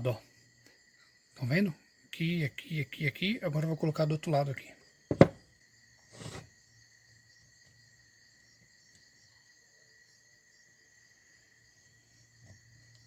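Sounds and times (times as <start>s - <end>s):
crickets chirring: 0.0s - 13.0s
parts scuffing on workbench: 5.1s - 5.4s, 6.2s - 6.5s
sharp knock: 5.1s - 5.4s.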